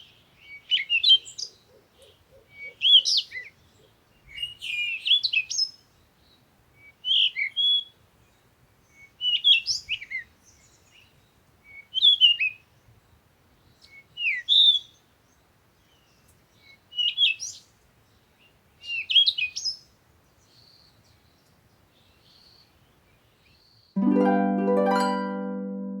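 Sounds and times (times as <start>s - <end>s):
songbird chirping: 0.0s - 26.0s
sustained musical note: 24.0s - 26.0s.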